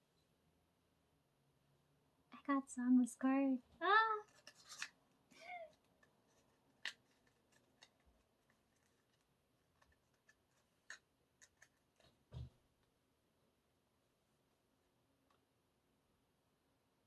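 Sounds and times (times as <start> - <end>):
photocards clicking on a table: 9.8 - 12.1.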